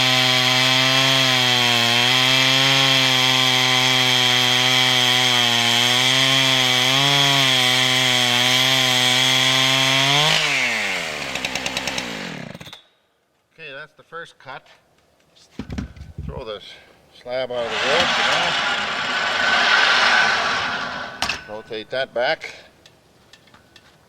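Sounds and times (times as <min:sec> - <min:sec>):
chainsaw cutting a log: 0:00.0 - 0:12.7, 0:17.5 - 0:21.6.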